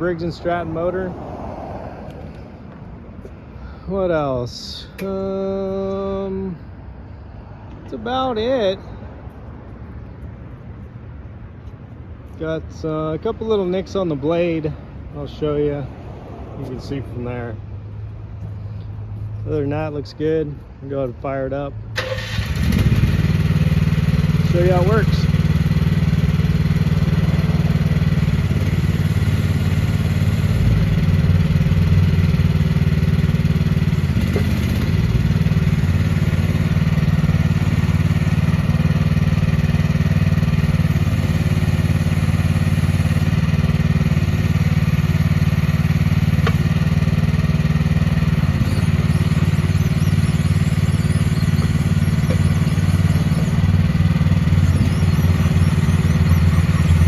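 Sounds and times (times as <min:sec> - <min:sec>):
excavator engine running: 0:22.0 - 0:57.0.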